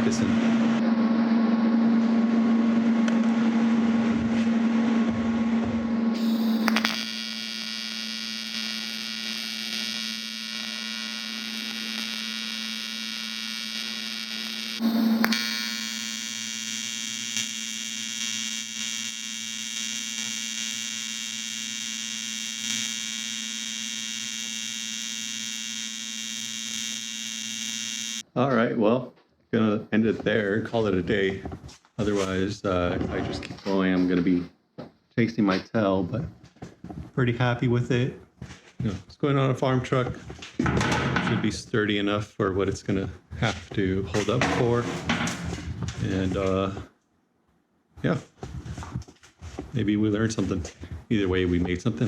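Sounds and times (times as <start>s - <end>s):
welding arc buzzing: 6.0s - 28.2s, 44.2s - 46.8s.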